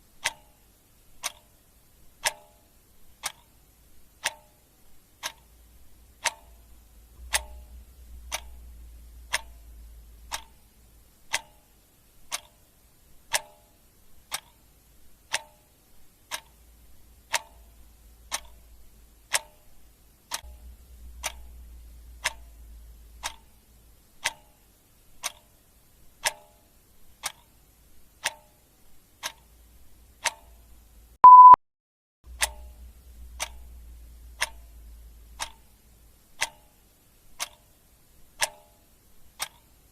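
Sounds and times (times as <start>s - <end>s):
clock ticking: 0.0s - 31.6s, 32.3s - 39.9s
short electronic beep: 31.2s - 31.6s.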